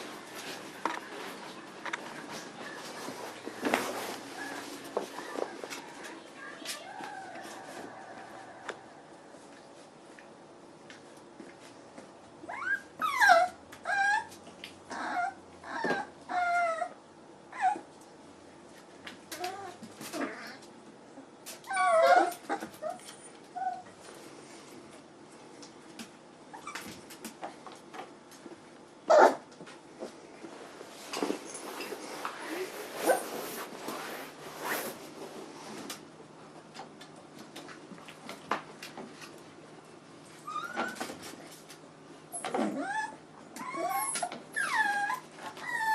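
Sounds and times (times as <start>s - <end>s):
puppies whining: 0.3s - 8.4s, 12.4s - 17.9s, 19.3s - 24.0s, 40.4s - 41.2s, 42.3s - 45.9s.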